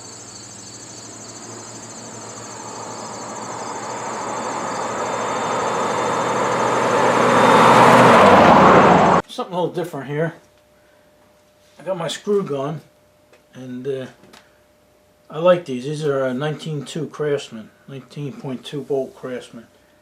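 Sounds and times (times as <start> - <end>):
low hum: 0.0 - 9.0
crickets chirping: 0.0 - 9.2
rushing noise: 0.9 - 9.2.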